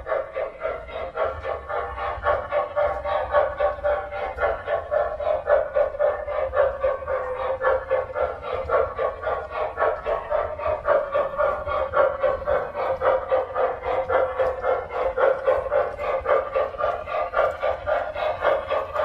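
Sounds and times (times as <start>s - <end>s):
model train steam chuffing: 0.0s - 19.0s
steady hum: 0.0s - 19.0s.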